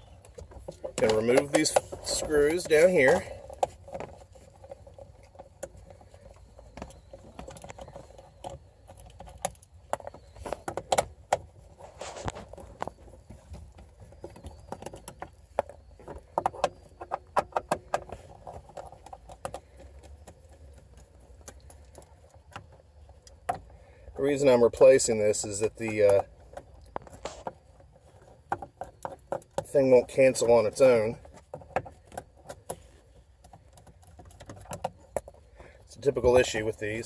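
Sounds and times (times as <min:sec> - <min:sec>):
scraping rustle: 0:00.0 - 0:37.0.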